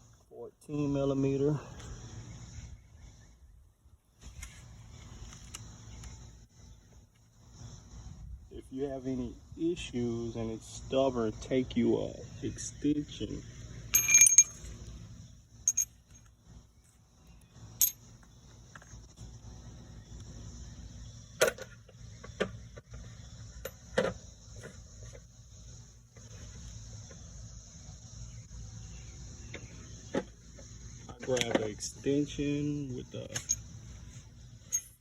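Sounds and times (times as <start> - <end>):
metal tools clinking: 13.9 - 14.8, 15.7 - 16.2, 33.2 - 33.7, 34.6 - 35.0.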